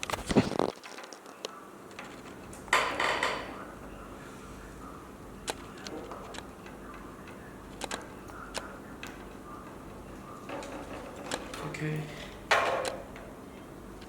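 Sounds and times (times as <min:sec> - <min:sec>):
steady low hum: 0:01.4 - 0:14.0
small tools clicking and tapping: 0:05.5 - 0:13.4.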